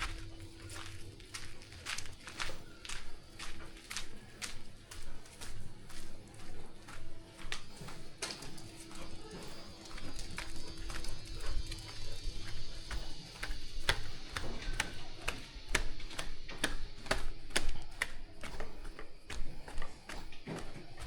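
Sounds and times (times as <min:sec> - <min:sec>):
sharp taps: 0:10.2 - 0:21.0.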